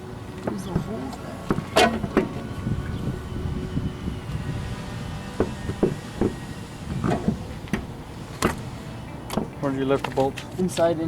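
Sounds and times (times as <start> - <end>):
steady low rumble: 0.0 - 9.9
sharp knocks: 1.5 - 2.4, 5.4 - 8.6.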